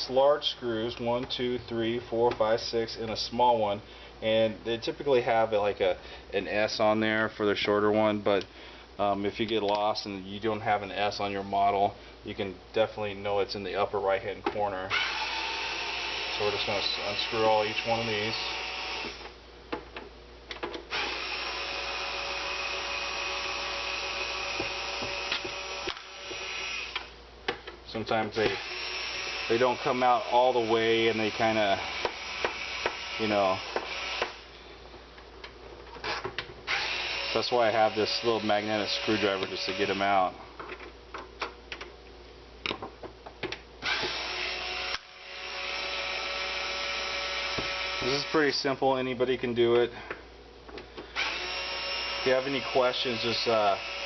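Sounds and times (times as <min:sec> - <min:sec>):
electric screwdriver running: 0:14.9 - 0:19.3, 0:20.9 - 0:27.2, 0:28.4 - 0:29.8, 0:31.2 - 0:34.4, 0:36.7 - 0:40.0, 0:43.8 - 0:48.4, 0:51.2 - 0:54.0.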